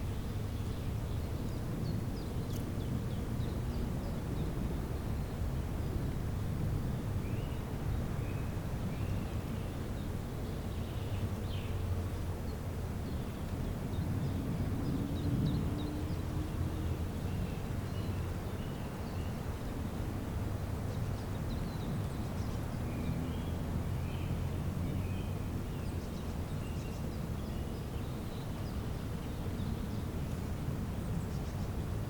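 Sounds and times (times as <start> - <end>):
small birds chirping: 20.8 - 31.8.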